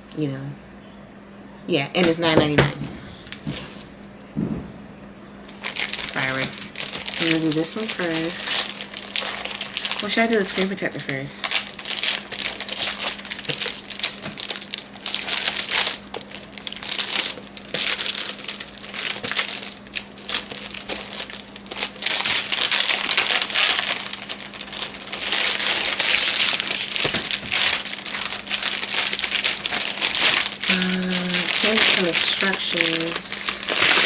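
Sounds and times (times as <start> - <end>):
plastic packaging crinkling: 5.4 - 34.0.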